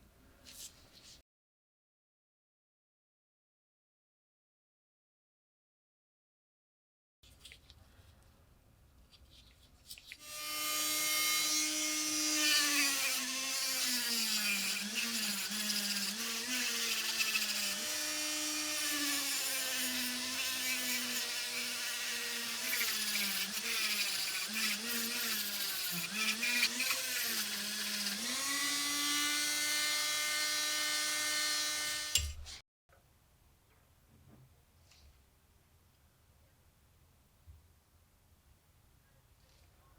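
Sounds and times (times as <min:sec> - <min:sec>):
rotary tool motor whine: 0:10.2 - 0:32.6.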